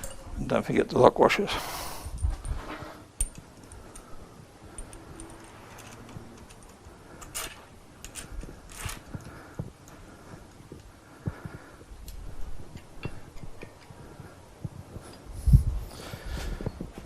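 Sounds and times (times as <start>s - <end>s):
metal parts clinking: 0.0s - 0.4s, 4.7s - 9.1s.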